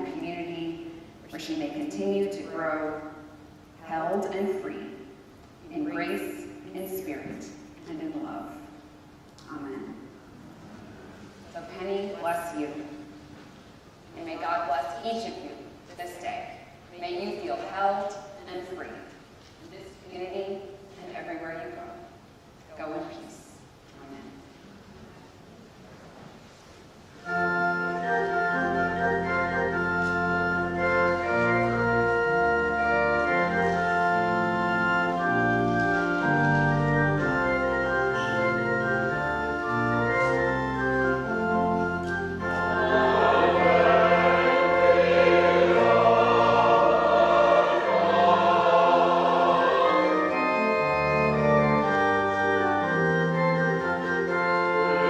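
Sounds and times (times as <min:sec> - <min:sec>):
church organ playing chords: 0:27.2 - 0:55.0
many voices singing: 0:42.6 - 0:50.7.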